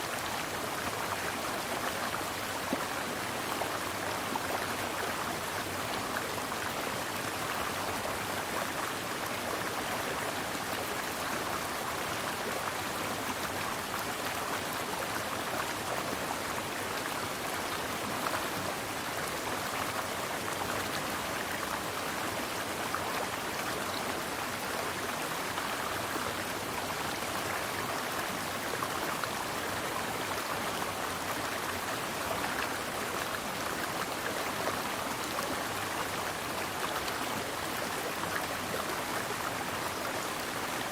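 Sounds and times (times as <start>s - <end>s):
stream flowing: 0.0s - 40.9s.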